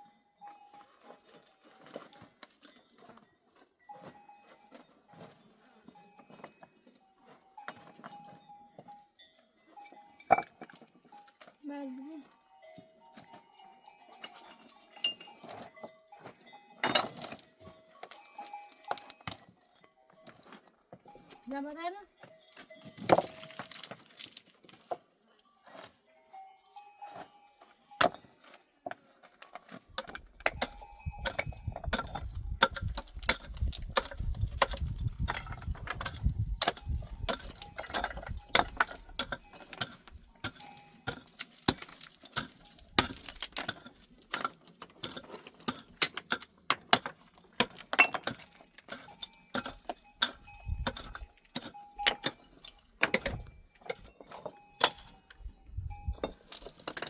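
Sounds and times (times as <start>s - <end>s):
metallic clinking and knocking: 13.1s - 21.4s, 22.2s - 24.8s, 27.1s - 57.0s.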